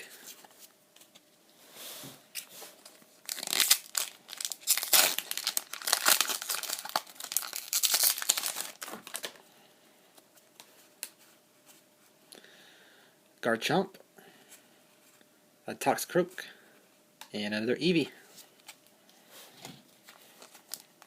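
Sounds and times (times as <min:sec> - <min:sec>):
foil wrapper tearing and crinkling: 0:03.2 - 0:09.4.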